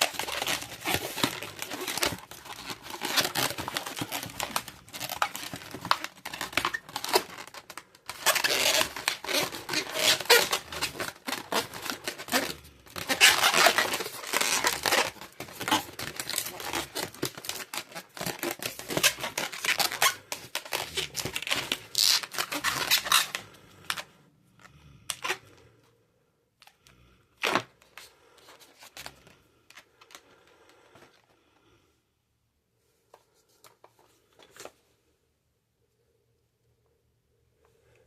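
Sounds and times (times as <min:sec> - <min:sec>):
balloons rubbing and squeaking: 0:00.0 - 0:24.1, 0:25.1 - 0:25.6, 0:27.4 - 0:30.3.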